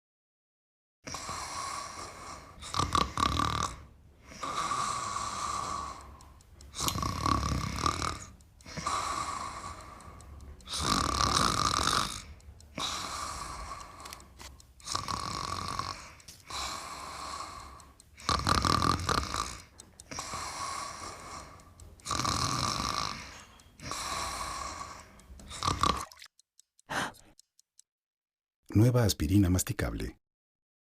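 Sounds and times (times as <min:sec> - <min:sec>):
person snoring: 0:01.1 - 0:14.2, 0:14.8 - 0:26.2.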